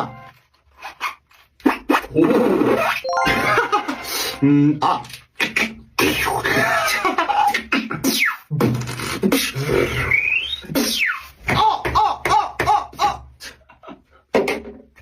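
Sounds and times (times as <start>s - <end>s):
beatboxing clicks and hissing: 7.5s - 11.4s
beatboxing whistle-like glide: 7.7s - 11.4s.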